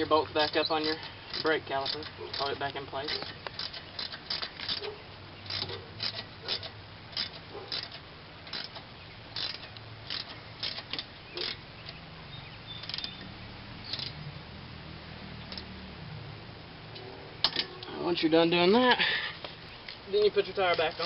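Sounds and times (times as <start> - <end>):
ratchet wrench clicking: 0.3 - 12.0, 12.7 - 13.3, 13.9 - 14.2, 15.4 - 15.8.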